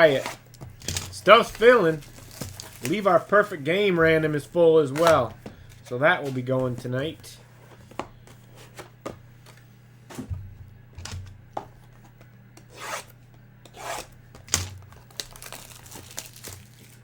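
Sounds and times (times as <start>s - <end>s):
packaging crinkling: 0.0s - 4.0s, 14.4s - 17.0s
cards sliding: 0.0s - 10.2s.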